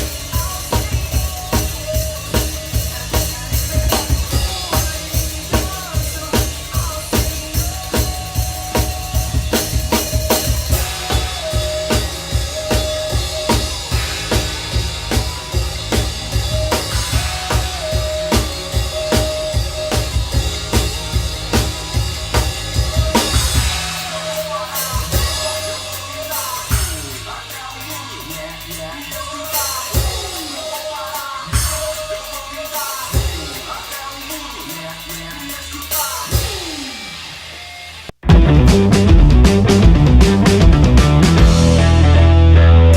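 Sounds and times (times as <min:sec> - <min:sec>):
backing music: 0:00.0 - 0:37.0, 0:38.2 - 0:42.9
drum kit groove: 0:00.0 - 0:42.9
recorded song with melody: 0:00.0 - 0:42.9.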